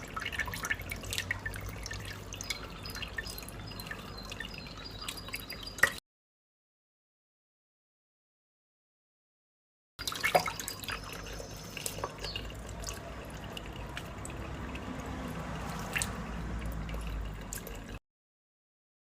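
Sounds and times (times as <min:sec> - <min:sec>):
water dripping and splashing: 0:00.0 - 0:06.0, 0:10.0 - 0:18.0.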